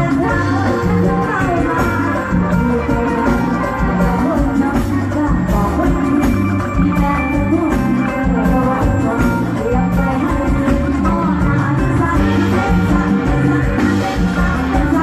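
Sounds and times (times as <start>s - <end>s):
live band music: 0.0s - 15.0s.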